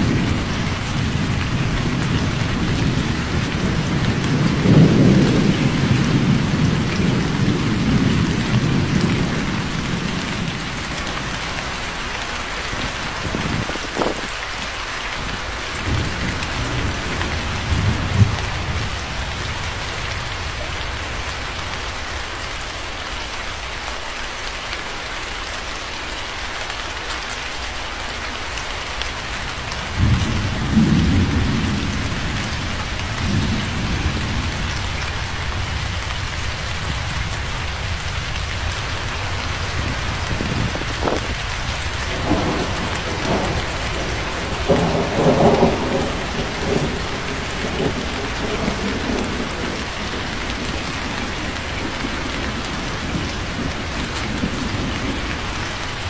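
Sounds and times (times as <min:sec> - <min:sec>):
rolling thunder: 0:00.0 - 0:14.4, 0:15.2 - 0:21.9, 0:29.6 - 0:56.0
heavy rain hissing: 0:00.0 - 0:56.0
sharp thunder crack: 0:42.1 - 0:55.2.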